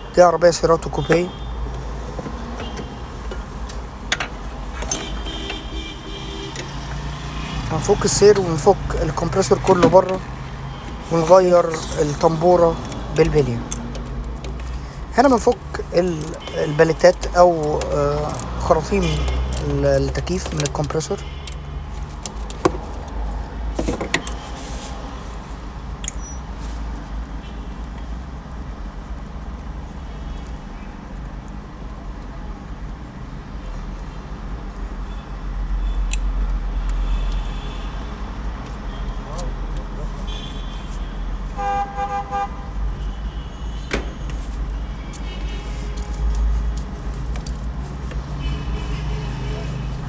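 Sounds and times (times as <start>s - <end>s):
low rumble of traffic: 0.0s - 50.0s
car horn: 0.2s - 3.2s, 4.8s - 13.6s, 40.1s - 46.5s, 48.3s - 50.0s
hand tools clinking on metal: 7.8s - 22.9s.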